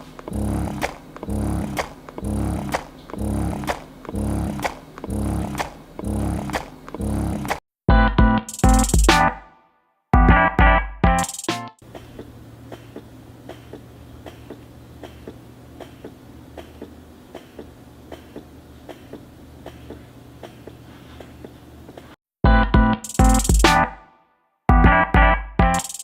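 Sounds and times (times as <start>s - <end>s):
breast pump motor hum: 0.0s - 7.6s.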